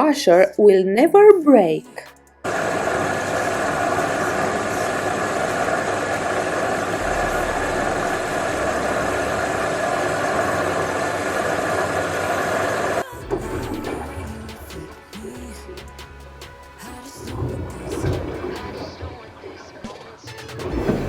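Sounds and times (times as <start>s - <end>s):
washing machine running: 2.5s - 14.9s, 16.8s - 19.6s
deep hum: 6.9s - 12.4s.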